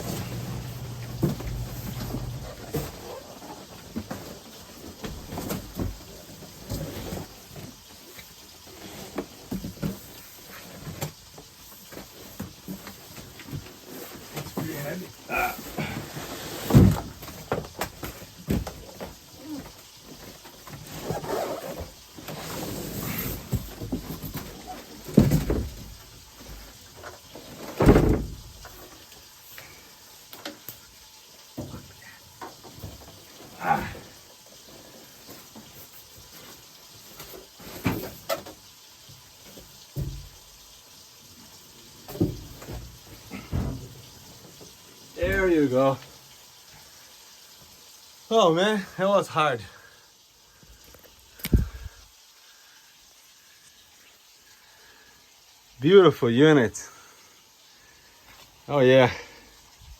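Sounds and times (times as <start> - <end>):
cardboard packing rustling: 0.0 - 11.1.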